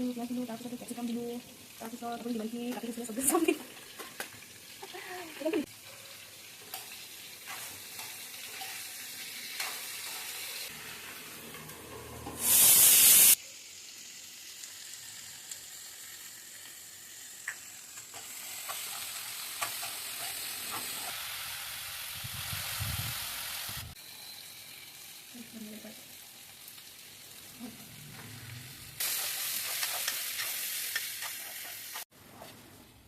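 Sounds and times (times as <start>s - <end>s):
food sizzling in a hot pan: 0.0s - 32.1s
spatula clicking and scraping: 6.6s - 8.9s, 9.5s - 10.5s, 29.0s - 32.0s
sudden loud hiss: 12.4s - 13.4s, 20.7s - 24.6s.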